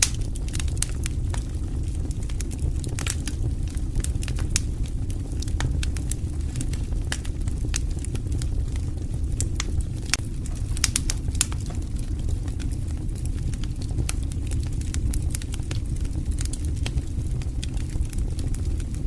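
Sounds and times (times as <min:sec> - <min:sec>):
burning wood crackling and popping: 0:00.0 - 0:19.0
low rumble of flames: 0:00.0 - 0:19.0.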